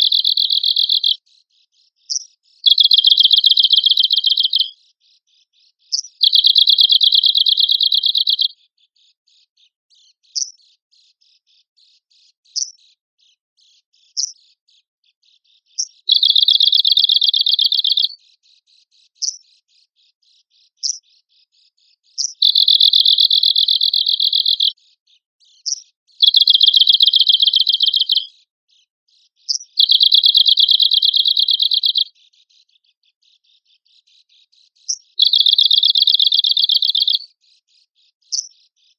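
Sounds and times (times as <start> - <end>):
bird high dry trills: 0.0 - 1.2, 2.1 - 4.7, 22.2 - 24.7, 25.7 - 28.3, 29.5 - 32.1, 34.9 - 37.3.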